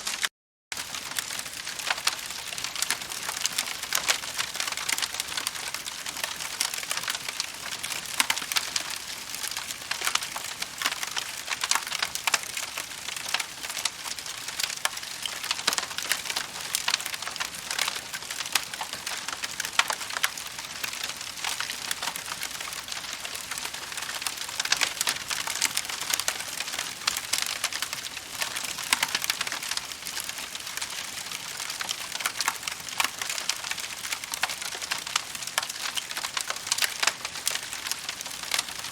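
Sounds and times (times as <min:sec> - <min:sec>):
wood fire crackling: 0:00.0 - 0:38.9.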